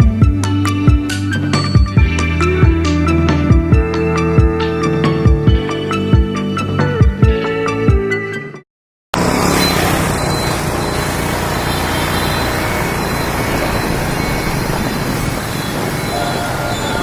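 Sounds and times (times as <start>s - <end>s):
busy road traffic: 9.2s - 17.0s.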